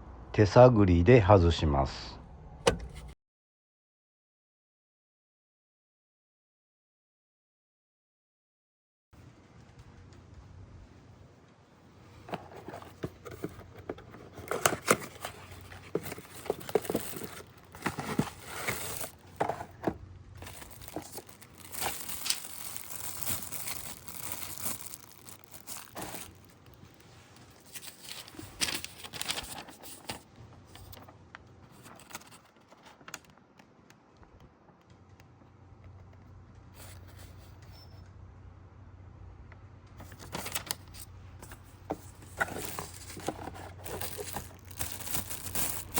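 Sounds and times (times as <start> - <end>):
rustling and scraping: 2.7 - 3.2, 11.9 - 33.1, 36.7 - 38.0, 40.0 - 45.9.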